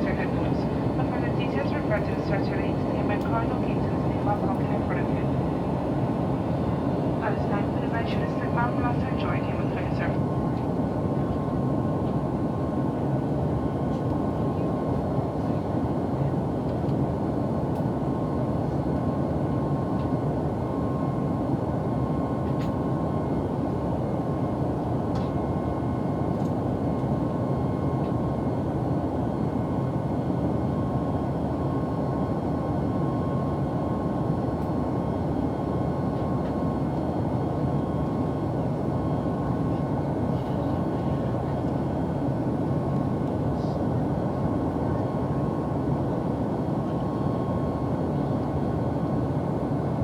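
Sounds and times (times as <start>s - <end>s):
airliner engines droning: 0.0s - 50.0s.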